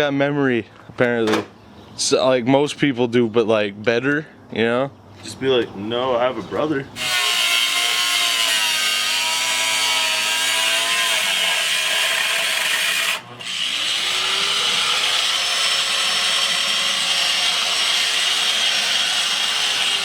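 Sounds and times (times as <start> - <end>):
power tool cutting metal: 7.0 - 20.0.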